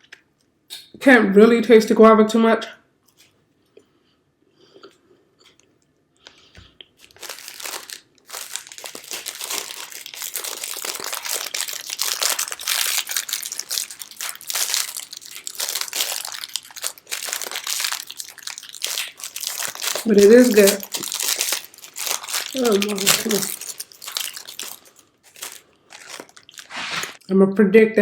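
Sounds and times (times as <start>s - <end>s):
plastic wrapper crinkling: 7.0s - 27.2s.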